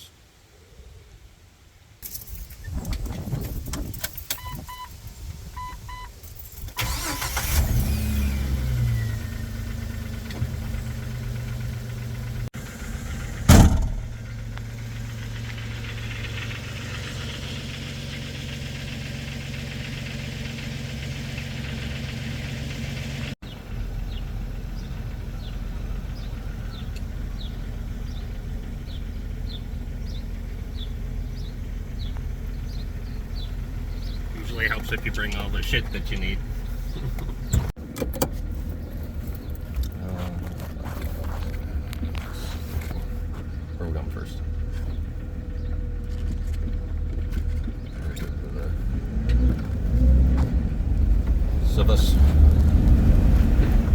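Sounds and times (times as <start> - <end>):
engine cranking and idling: 5.6 - 53.9
loud bang: 13.4 - 14.4.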